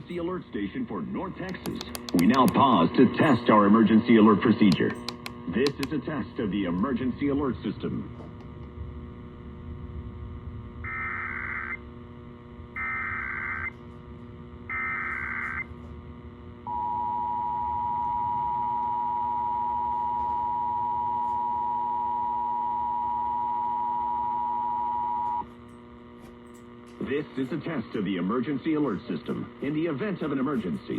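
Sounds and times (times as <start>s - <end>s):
low steady hum: 0.0s - 30.9s
warbling data tone bursts: 10.8s - 11.8s, 12.8s - 13.7s, 14.7s - 15.7s
steady dual alert tone: 10.8s - 11.9s, 12.8s - 13.7s, 14.7s - 15.7s.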